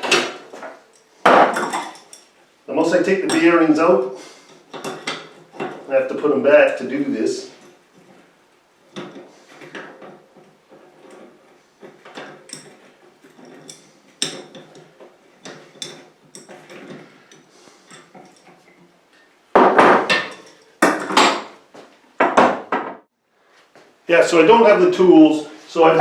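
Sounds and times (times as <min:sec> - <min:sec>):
metal parts clattering: 0:00.0 - 0:02.4, 0:04.4 - 0:05.9, 0:08.9 - 0:18.9, 0:19.6 - 0:21.6
small metal parts clinking: 0:00.0 - 0:02.5, 0:04.4 - 0:05.9, 0:08.9 - 0:21.6.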